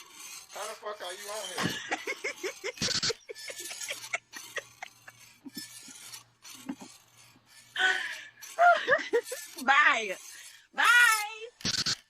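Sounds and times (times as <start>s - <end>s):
person laughing: 1.6s - 7.0s, 7.8s - 9.6s.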